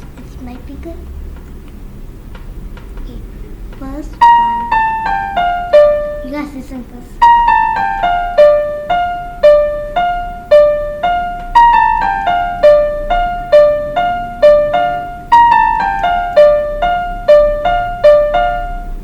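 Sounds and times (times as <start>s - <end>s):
electronic piano melody: 4.2s - 19.0s.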